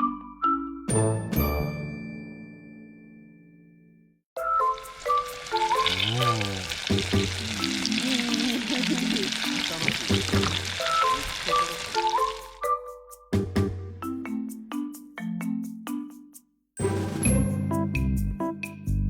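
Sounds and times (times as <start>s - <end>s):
light music with mallet notes: 0.0s - 19.0s
sizzling hiss: 4.8s - 12.5s.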